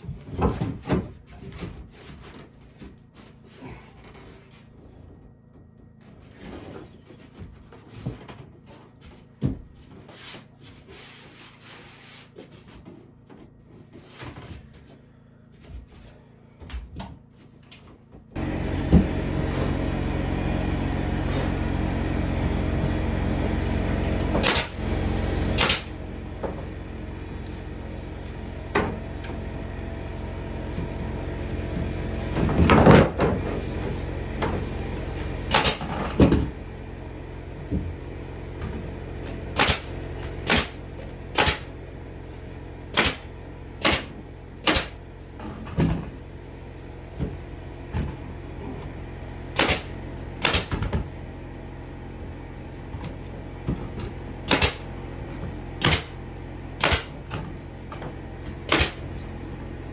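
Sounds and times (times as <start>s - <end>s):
motor running: 18.3s - 59.9s.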